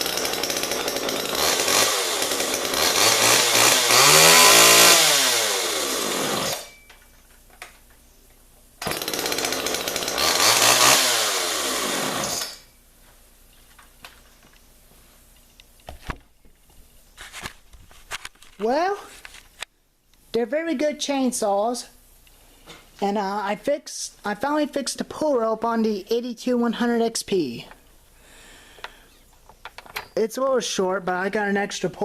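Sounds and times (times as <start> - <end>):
chainsaw revving: 0.0 - 6.8, 8.8 - 12.7.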